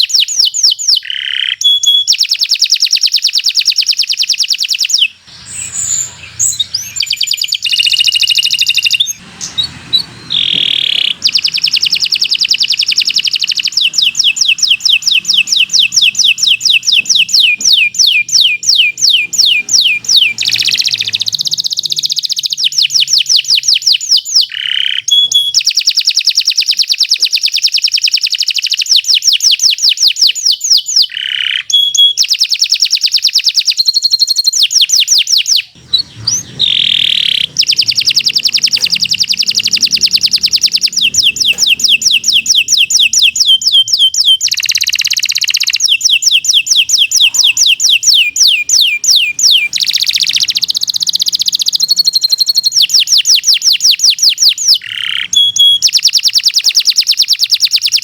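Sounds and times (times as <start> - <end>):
canary singing trills: 0.0 - 58.0.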